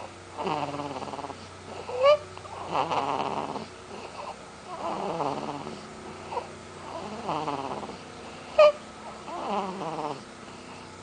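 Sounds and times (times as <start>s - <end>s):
person snoring: 2.6s - 8.0s, 9.3s - 10.3s.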